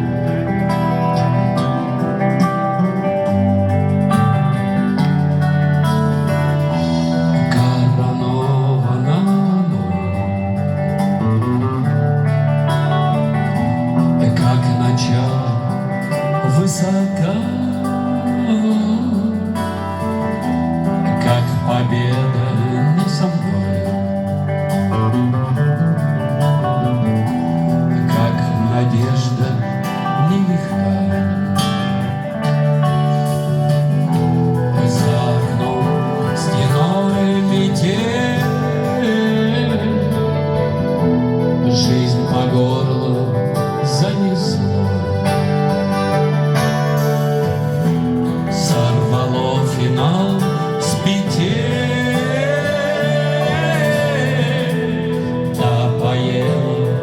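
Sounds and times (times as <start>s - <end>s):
rock band playing live: 0.0s - 57.0s
person singing: 6.3s - 11.8s, 12.8s - 25.4s, 27.9s - 57.0s.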